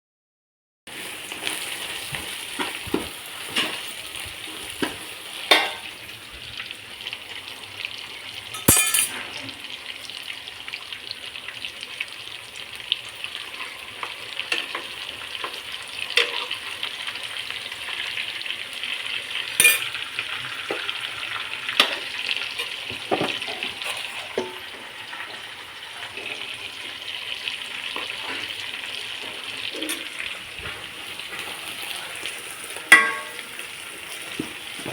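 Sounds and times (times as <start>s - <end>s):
food sizzling in a pan: 0.9s - 34.9s
utensil scraping a pan: 21.8s - 24.6s.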